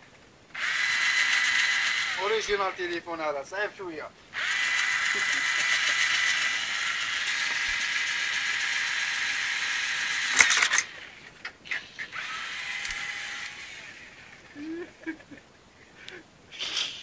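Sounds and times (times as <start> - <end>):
small motor whining: 0.6 - 2.8, 4.3 - 14.5
sharp clicks: 10.2 - 13.6.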